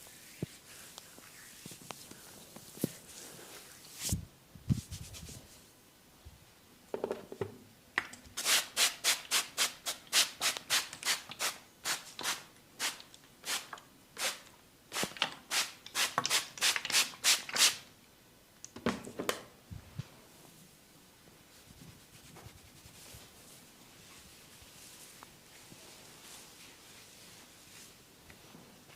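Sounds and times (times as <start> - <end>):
hands rubbing skin: 0.0 - 5.6, 21.5 - 28.4.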